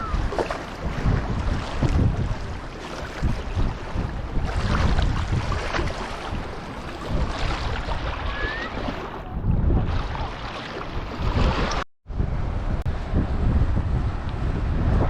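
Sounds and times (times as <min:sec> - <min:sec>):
waves lapping on river bank: 0:00.0 - 0:11.8
gusty wind buffeting microphone: 0:00.0 - 0:15.0.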